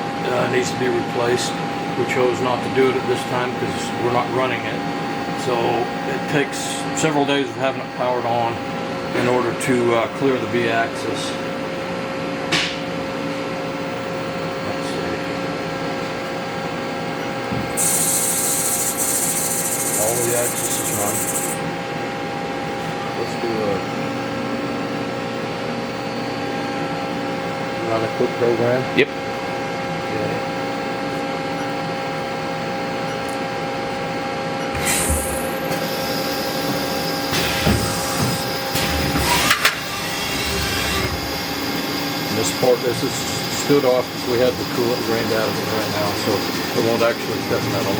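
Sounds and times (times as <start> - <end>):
lathe humming with whining tones: 15.3 - 47.9
spindle whirring: 17.5 - 22.5, 34.6 - 47.9
loud high hiss: 17.8 - 21.6.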